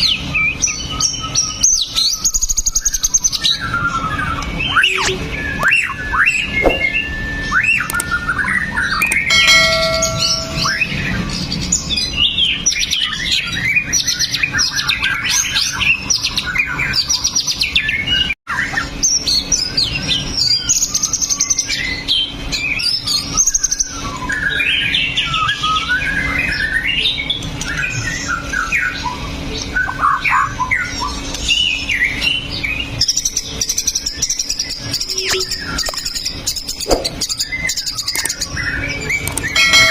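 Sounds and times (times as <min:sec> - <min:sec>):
bird singing whistles and chatter: 0:00.0 - 0:09.5, 0:18.6 - 0:39.9.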